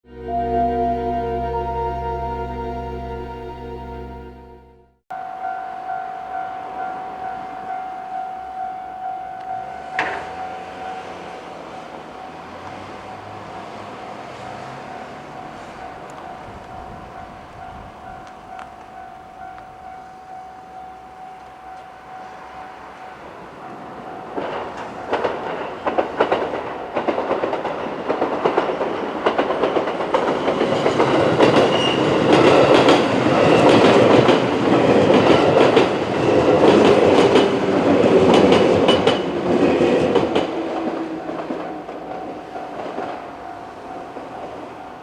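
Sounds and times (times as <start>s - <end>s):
train wheels rumbling: 22.2s - 45.0s
wheels clacking over rail joints: 23.9s - 44.8s.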